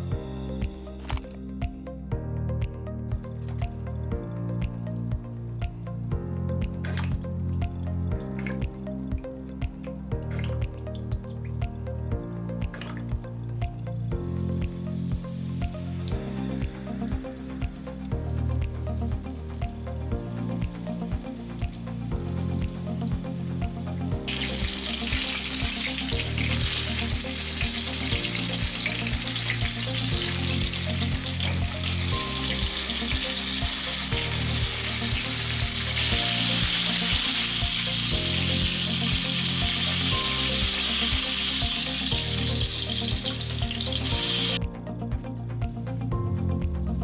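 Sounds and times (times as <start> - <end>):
background music: 0.0 - 47.0
chicken frying in hot oil: 24.2 - 44.6.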